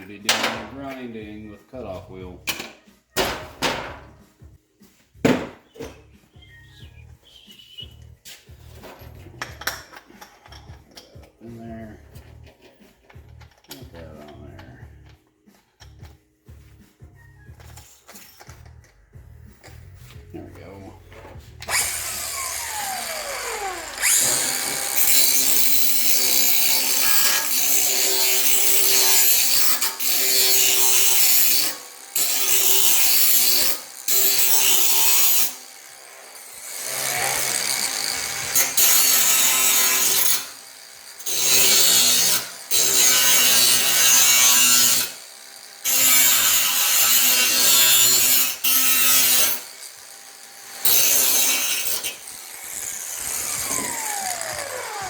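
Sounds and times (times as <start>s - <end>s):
grinder motor humming: 21.6s - 25.8s, 52.3s - 55.0s
wire wheel scrubbing steel: 21.6s - 35.6s.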